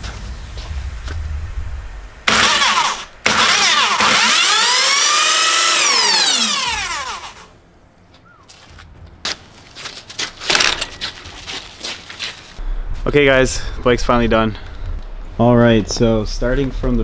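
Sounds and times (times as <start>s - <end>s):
electric motor whining: 2.2s - 7.5s.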